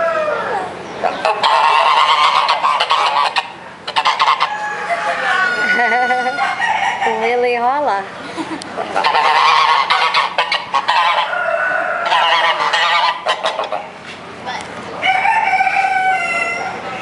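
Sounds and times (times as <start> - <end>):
geese honking: 0.0 - 7.4, 8.8 - 14.0.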